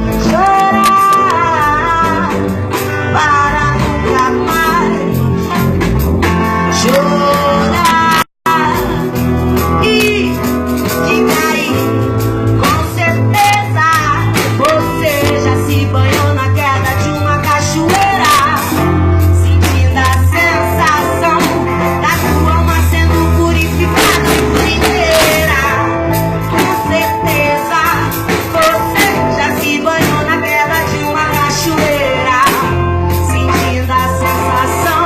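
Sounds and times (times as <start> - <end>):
song with singing voice: 0.0 - 35.0.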